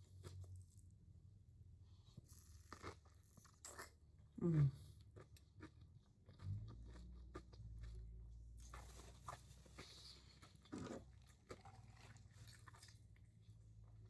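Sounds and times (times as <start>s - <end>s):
person chewing: 2.3s - 4.0s, 8.6s - 13.0s.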